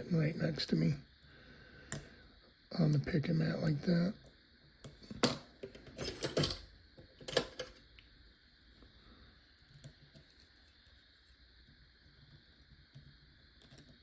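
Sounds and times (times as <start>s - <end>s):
metal tools clicking and clattering: 5.2s - 7.8s.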